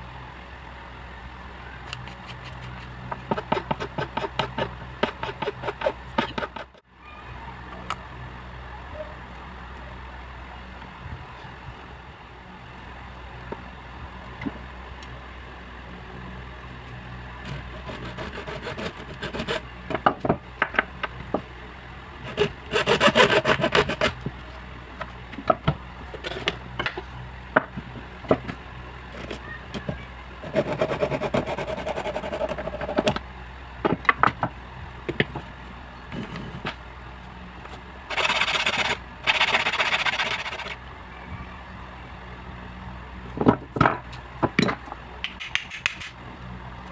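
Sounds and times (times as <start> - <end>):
rasping scraping noise: 1.9 - 6.8, 17.4 - 19.7, 22.2 - 24.6, 30.4 - 33.2, 38.1 - 40.8.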